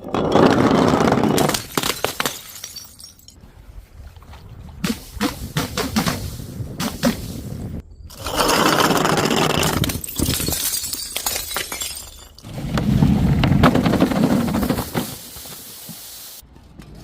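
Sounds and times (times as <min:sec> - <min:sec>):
glass breaking: 0:01.3 - 0:03.4, 0:09.8 - 0:12.5
glass shards clinking: 0:01.5 - 0:03.4, 0:09.8 - 0:12.4.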